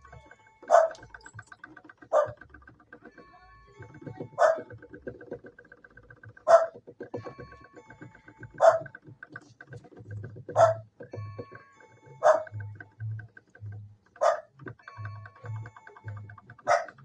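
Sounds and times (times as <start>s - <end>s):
background music with low beat: 0.0s - 17.0s
dog barking: 0.7s - 1.0s, 2.1s - 2.4s, 4.4s - 4.7s, 6.5s - 6.8s, 8.6s - 8.9s, 10.6s - 10.8s, 12.2s - 12.5s, 14.2s - 14.5s, 16.7s - 17.0s.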